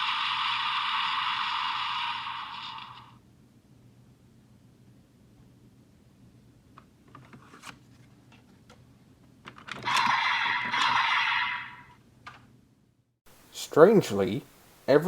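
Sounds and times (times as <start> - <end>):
electronic toy sound effect: 9.9 - 11.9.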